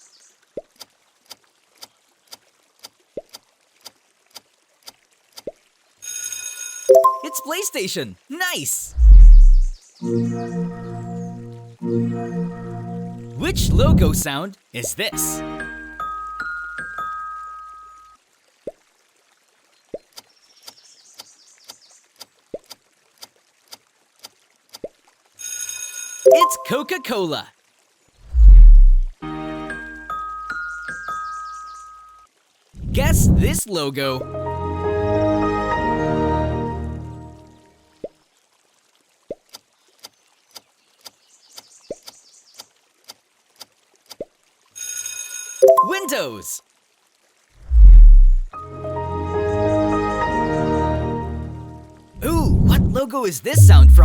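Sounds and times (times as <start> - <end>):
rising bubble-like bloops: 8.9 - 9.8, 28.3 - 29.1, 47.6 - 48.5.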